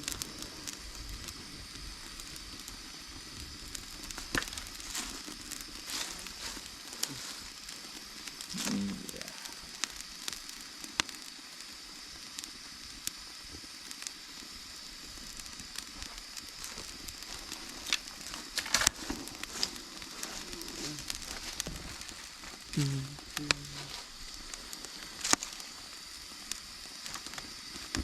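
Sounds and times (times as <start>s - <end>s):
campfire hissing: 0.0s - 28.0s
fire crackling and popping: 0.0s - 28.0s.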